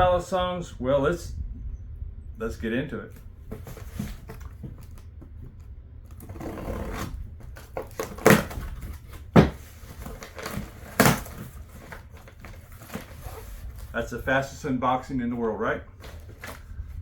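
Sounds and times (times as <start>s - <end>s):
cardboard box cracking open: 3.5s - 5.0s, 6.1s - 13.9s, 16.0s - 16.7s
cardboard scraping and tearing: 3.5s - 5.0s, 6.1s - 14.6s, 15.9s - 16.8s.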